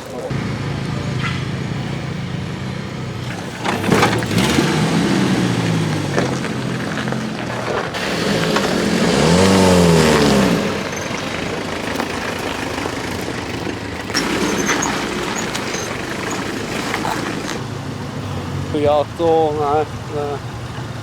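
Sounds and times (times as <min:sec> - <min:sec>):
off-road vehicle engine revving: 0:00.0 - 0:21.0.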